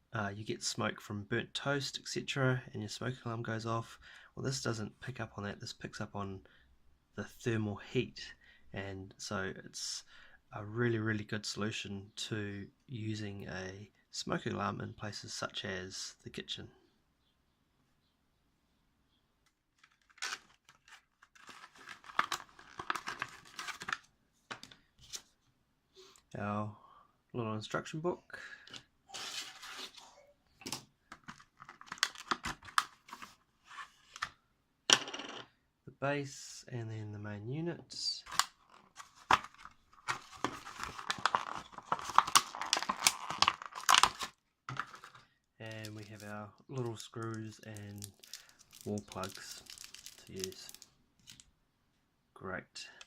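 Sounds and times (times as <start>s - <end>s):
packaging tearing and crinkling: 19.8s - 24.1s, 31.2s - 33.0s, 38.3s - 51.4s.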